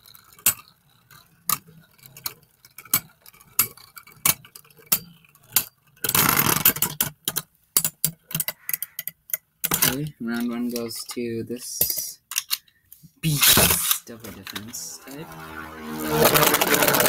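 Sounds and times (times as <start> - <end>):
spinning tops clacking together: 16.1 - 17.0.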